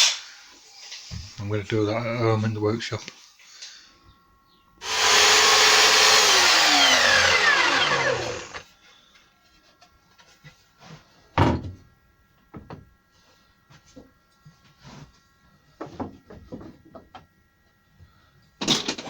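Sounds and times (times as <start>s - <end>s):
power tool motor winding down: 4.8s - 8.6s.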